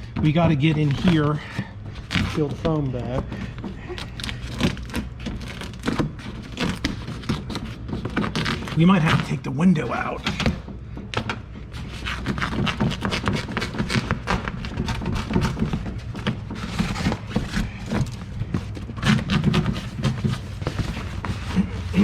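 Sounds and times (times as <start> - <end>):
foam peeling crackle: 0.2 - 10.3.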